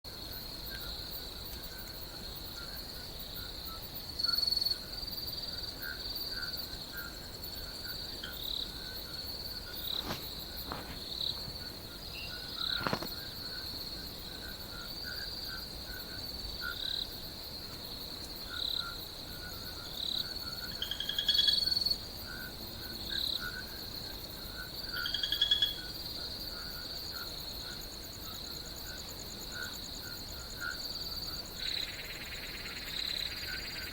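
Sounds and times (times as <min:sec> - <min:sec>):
high-pitched insect trill: 0:18.2 - 0:33.9
frog chirping calls: 0:20.6 - 0:22.5, 0:24.9 - 0:25.9, 0:31.6 - 0:33.9.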